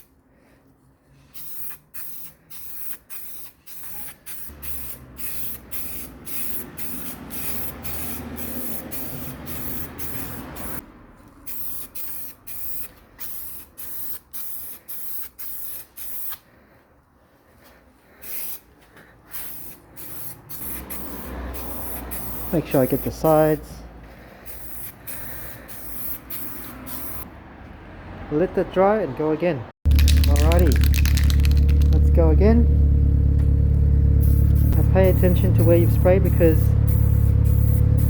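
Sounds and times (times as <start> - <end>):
aerosol spray can hissing: 1.4 - 10.8, 11.5 - 16.4, 18.2 - 18.7, 19.3 - 23.4, 24.5 - 27.2, 29.9 - 32.0, 34.2 - 38.0.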